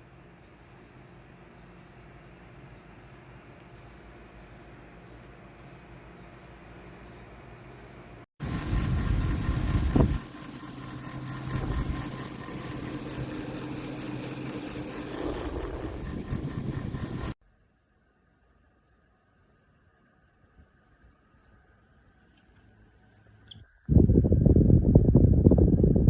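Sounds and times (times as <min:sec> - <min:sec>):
motor humming: 0:08.4 - 0:17.4.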